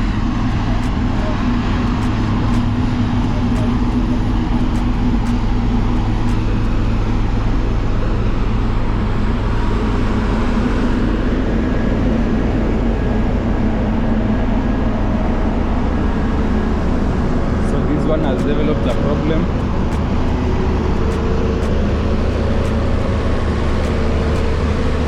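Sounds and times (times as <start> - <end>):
heavy engines running: 0.0 - 25.0
road traffic drone: 0.0 - 25.0.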